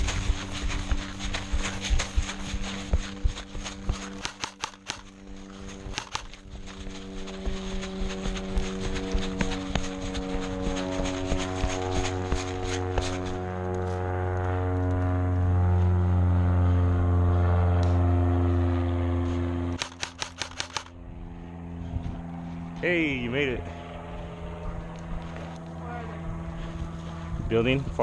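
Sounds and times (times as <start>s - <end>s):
machine-like drone: 0.0s - 28.0s
airsoft gun shots: 4.2s - 5.1s, 5.9s - 6.4s, 19.8s - 20.9s.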